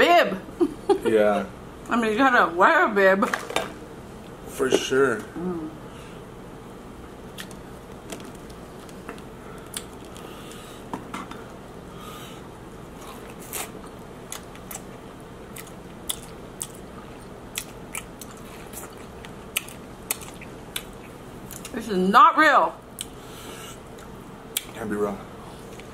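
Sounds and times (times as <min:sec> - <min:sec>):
chewing: 0:13.0 - 0:21.7.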